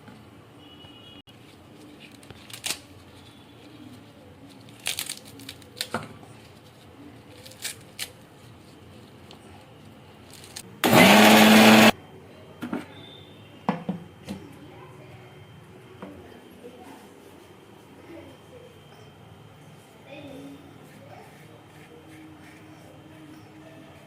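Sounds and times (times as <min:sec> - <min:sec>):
mixer grinder motor: 0:10.8 - 0:12.0.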